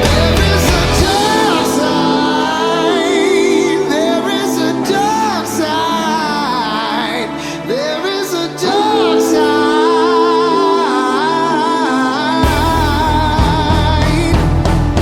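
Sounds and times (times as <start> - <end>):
heavy low bass: 0.0 - 2.4, 12.4 - 15.0
sustained chords: 0.0 - 15.0
wordless sung vocal: 0.0 - 15.0.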